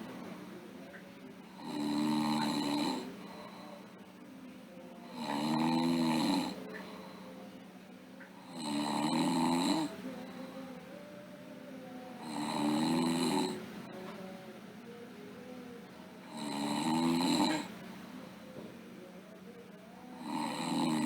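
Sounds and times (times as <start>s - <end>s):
girl snoring: 1.5s - 3.6s, 5.0s - 6.6s, 8.4s - 10.0s, 12.2s - 13.6s, 16.3s - 17.8s, 20.2s - 21.0s
soft breathing: 1.5s - 4.3s, 5.0s - 7.7s, 9.8s - 12.8s.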